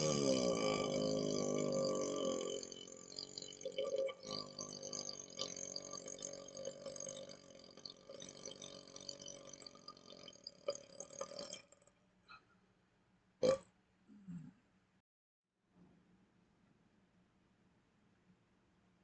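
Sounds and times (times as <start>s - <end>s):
man belching: 0.0s - 11.6s, 13.4s - 14.5s.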